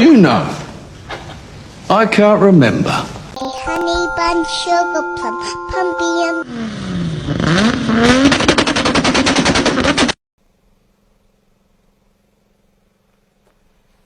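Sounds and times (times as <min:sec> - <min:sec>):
pitched gliding tone: 0:03.4 - 0:06.7.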